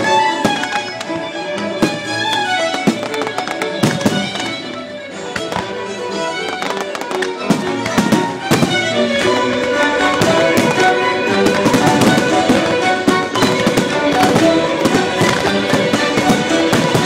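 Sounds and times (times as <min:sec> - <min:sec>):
music: 0:00.0 - 0:17.0
fireworks bangs: 0:01.8 - 0:04.8, 0:06.4 - 0:17.0.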